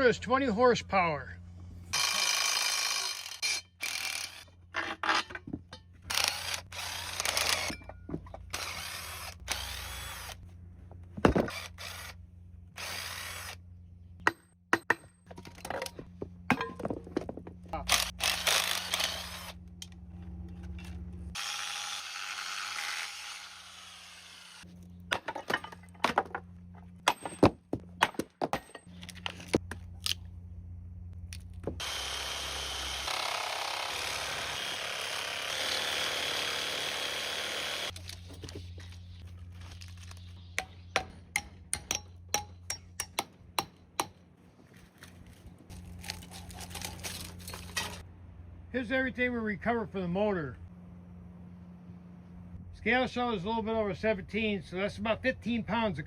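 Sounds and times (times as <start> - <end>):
steady low hum: 0.0 - 2.4, 4.1 - 21.4, 24.6 - 33.1, 37.9 - 55.5
power tool cutting metal: 2.0 - 4.4, 21.3 - 24.6, 31.8 - 38.0.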